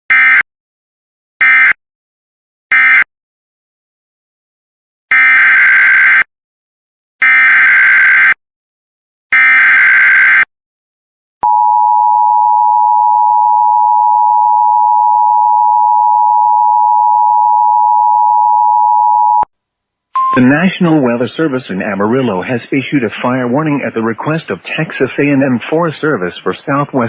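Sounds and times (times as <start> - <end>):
two-tone attention signal: 20.2 - 20.5.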